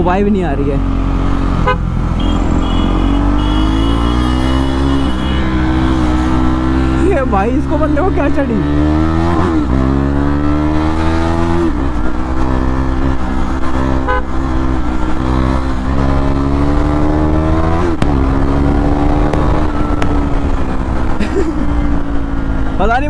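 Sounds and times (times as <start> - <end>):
motorcycle engine revving: 0.8 - 22.8
short horn toot: 2.2 - 5.6.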